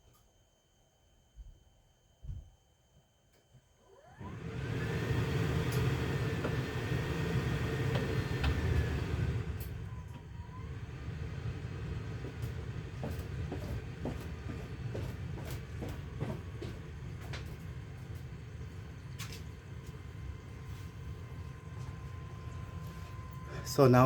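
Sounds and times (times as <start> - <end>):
whine rising in pitch: 4.3 - 24.0.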